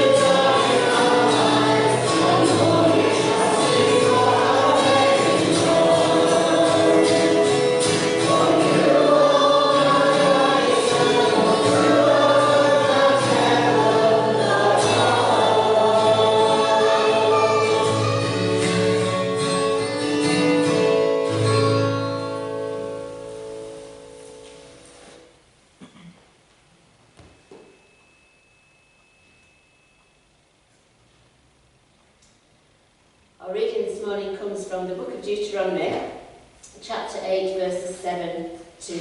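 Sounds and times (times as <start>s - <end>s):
choir singing a hymn: 0.0s - 19.4s.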